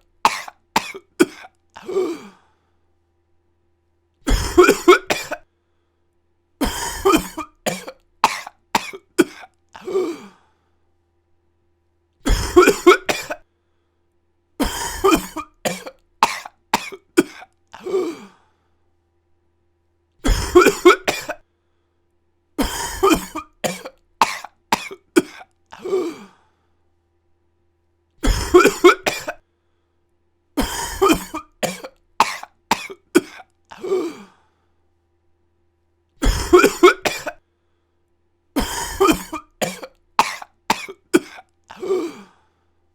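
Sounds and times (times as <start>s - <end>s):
person coughing: 0.2s - 2.4s, 4.3s - 5.5s, 6.6s - 10.4s, 12.2s - 13.5s, 14.6s - 18.4s, 20.2s - 21.4s, 22.6s - 26.4s, 28.2s - 29.4s, 30.6s - 34.4s, 36.2s - 37.4s, 38.6s - 42.4s.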